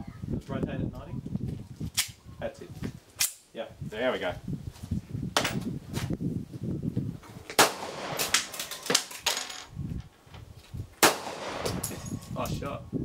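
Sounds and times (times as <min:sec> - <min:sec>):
pistol shots: 0:07.6 - 0:09.1, 0:11.0 - 0:12.0.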